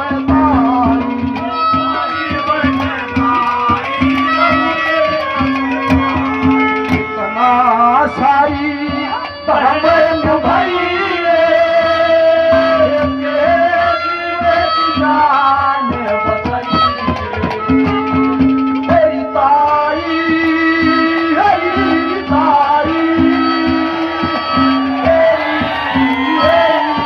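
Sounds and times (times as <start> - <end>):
hand drum beating quickly: 0.0 - 9.4, 14.4 - 27.0
pitch-bending melody line: 21.0 - 27.0.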